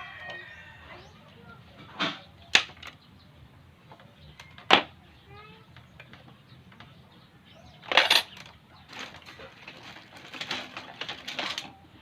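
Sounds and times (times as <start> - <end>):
small hard objects rattling: 7.8 - 11.8.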